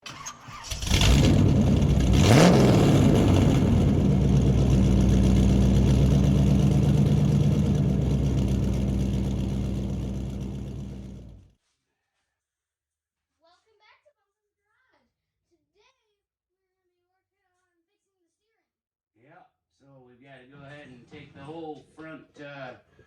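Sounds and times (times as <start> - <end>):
race car engine revving: 0.1 - 11.4.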